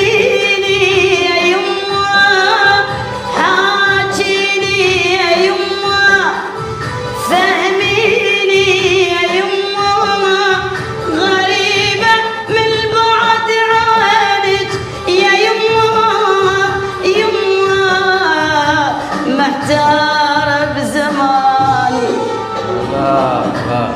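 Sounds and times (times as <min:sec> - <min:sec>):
woman singing: 0:00.0 - 0:23.7
low percussion beat: 0:21.6 - 0:23.9.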